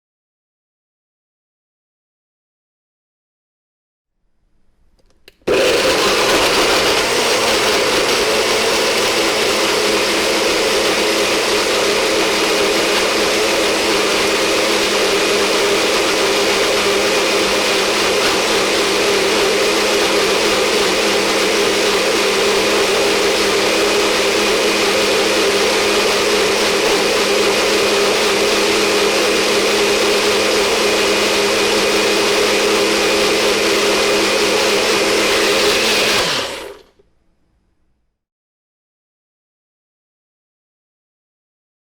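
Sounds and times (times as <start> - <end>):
electric blender running: 5.4 - 37.0.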